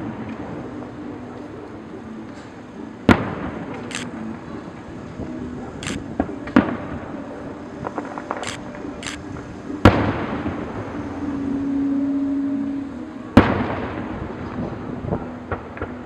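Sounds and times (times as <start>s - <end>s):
fireworks pops and crackles: 5.8s - 10.8s, 13.4s - 16.0s
fireworks booming: 13.4s - 16.0s.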